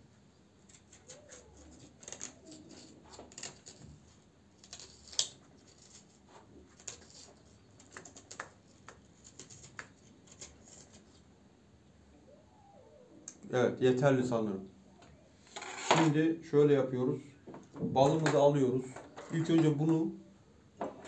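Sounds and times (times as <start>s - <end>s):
knife scraping radish: 0.6s - 11.2s, 15.4s - 16.0s.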